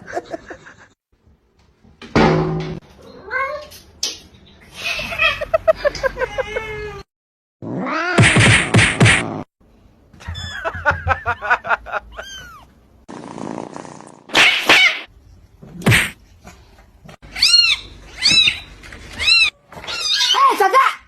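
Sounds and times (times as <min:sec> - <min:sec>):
cat meowing: 0:12.1 - 0:12.7.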